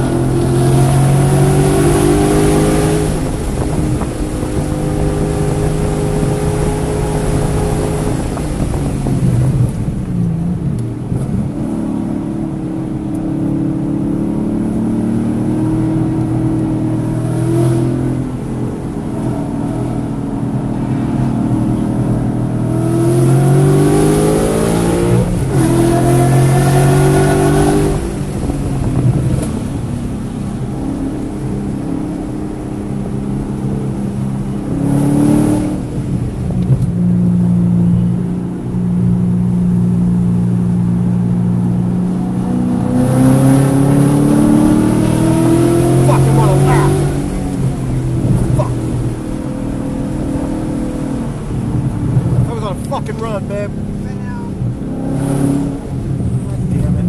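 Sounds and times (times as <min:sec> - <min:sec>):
race car engine revving: 0:00.0 - 0:57.0.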